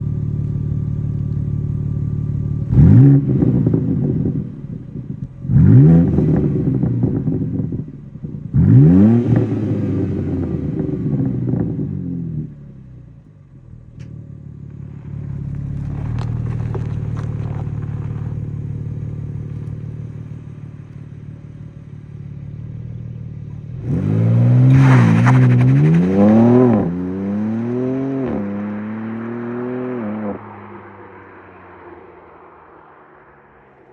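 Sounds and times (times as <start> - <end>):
car engine revving: 0.0 - 12.7, 14.0 - 33.9.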